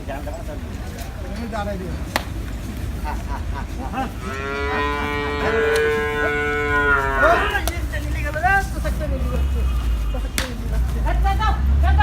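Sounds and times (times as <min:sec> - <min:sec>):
cow mooing: 0:04.1 - 0:07.6.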